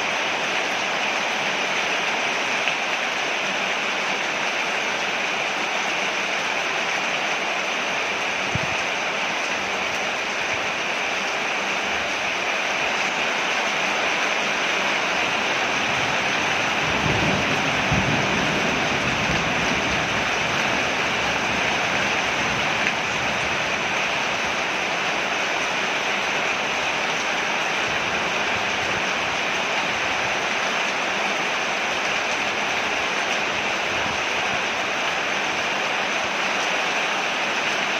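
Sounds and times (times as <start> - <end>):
rain falling on a porch: 0.0 - 37.9
thunder rumble: 16.2 - 23.5.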